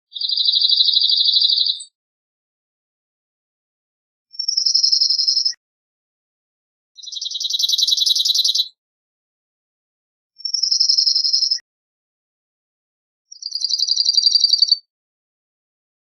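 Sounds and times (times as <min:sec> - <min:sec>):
bird singing high trills: 0:04.4 - 0:05.6, 0:07.0 - 0:08.7, 0:10.4 - 0:11.6, 0:13.3 - 0:14.9.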